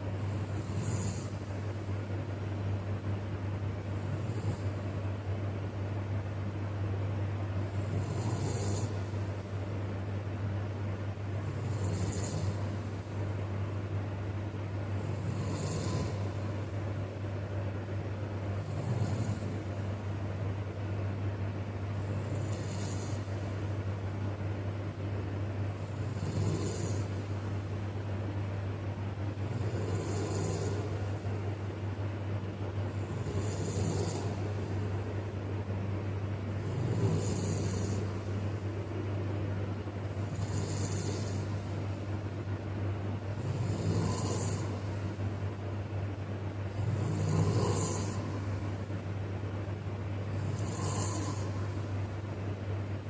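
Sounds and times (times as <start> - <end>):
steady low hum: 0.0 - 53.0
man snoring: 0.2 - 1.5, 3.9 - 4.9, 7.6 - 9.5, 11.3 - 13.3, 14.9 - 16.7, 18.4 - 20.1, 21.9 - 23.7, 25.7 - 27.5, 29.3 - 31.5, 32.7 - 35.3, 36.4 - 38.6, 40.0 - 42.0, 43.3 - 45.2, 46.7 - 48.8, 50.2 - 52.2.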